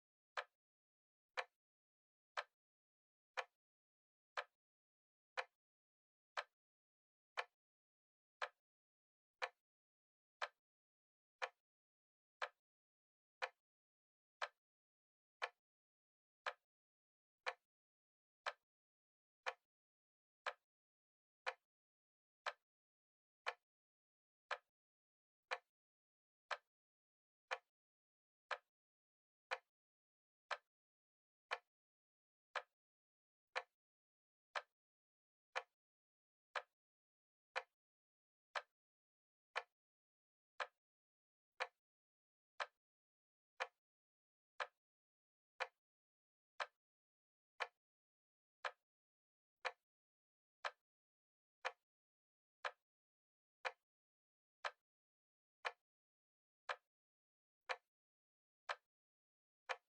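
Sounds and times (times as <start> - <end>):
timer ticking: 35.5 - 35.7.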